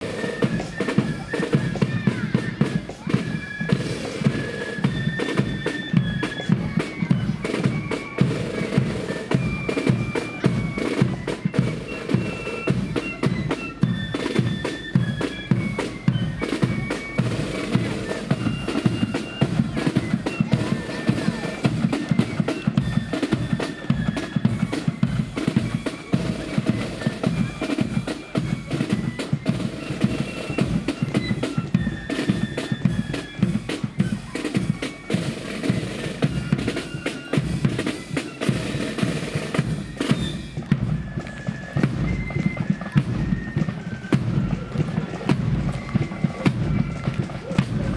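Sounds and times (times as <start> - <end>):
flutes playing a tune: 0.0 - 47.9
snare drum rolls: 0.0 - 47.9
bass drum beats: 44.2 - 47.9.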